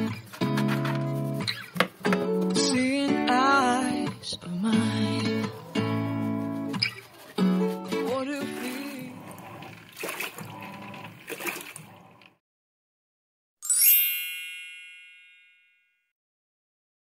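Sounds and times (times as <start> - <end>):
background guitar music: 0.0 - 9.2
bright bell-like chime: 13.6 - 16.2.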